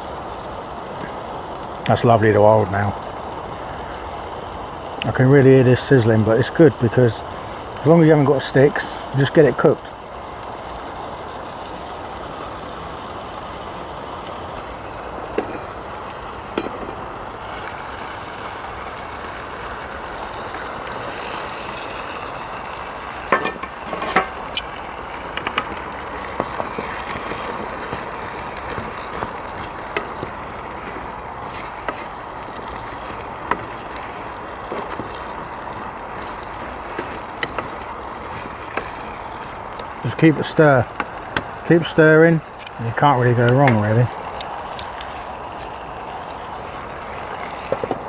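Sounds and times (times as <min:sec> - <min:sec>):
curry sizzling in oil: 0:02.7 - 0:48.0
stirring knocks and clinks: 0:15.3 - 0:17.1, 0:23.2 - 0:41.8.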